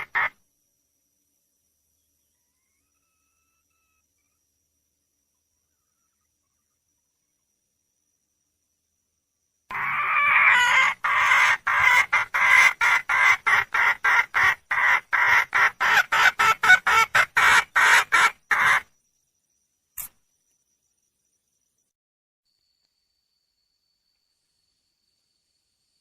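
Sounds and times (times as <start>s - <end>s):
hen calling and clucking: 0.0s - 0.4s, 9.7s - 18.9s
brief click: 20.0s - 20.2s.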